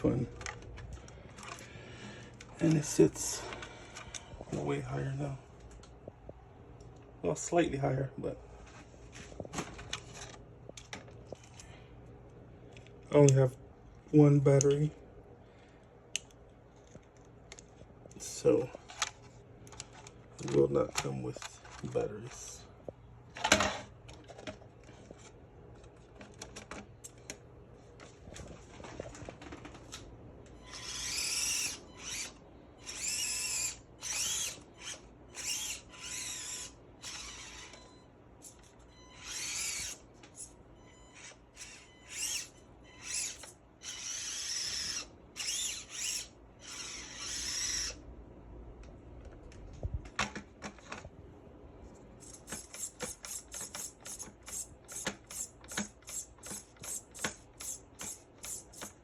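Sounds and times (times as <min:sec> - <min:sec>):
small electric motor whining: 0:30.6 - 0:40.5, 0:41.1 - 0:48.0.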